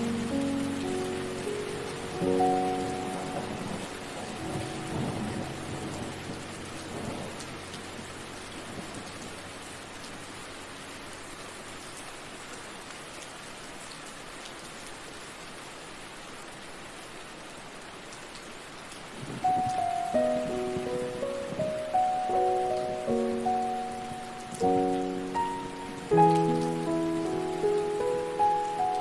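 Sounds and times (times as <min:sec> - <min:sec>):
soft music with held notes: 0:00.0 - 0:10.8, 0:19.4 - 0:29.0
steady rain: 0:00.0 - 0:29.0.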